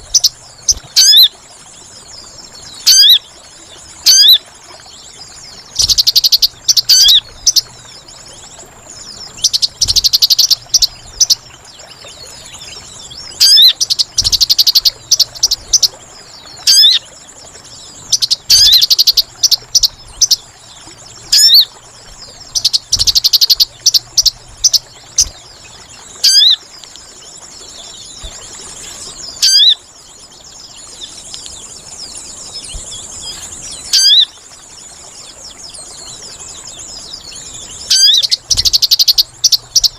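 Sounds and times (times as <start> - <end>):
bird chattering calls: 37.9 - 39.9.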